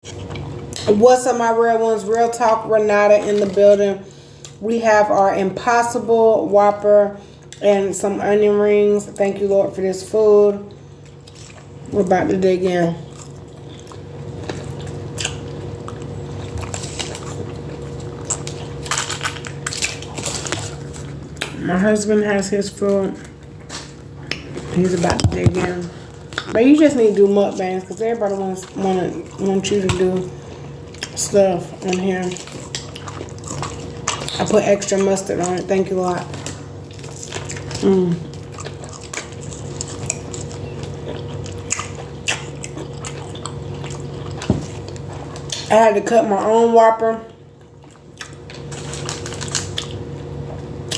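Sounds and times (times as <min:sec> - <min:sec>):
steady low hum: 0:00.0 - 0:50.9
chewing clicks and crackles: 0:11.0 - 0:12.0, 0:13.0 - 0:21.6, 0:22.9 - 0:45.7, 0:47.3 - 0:50.9.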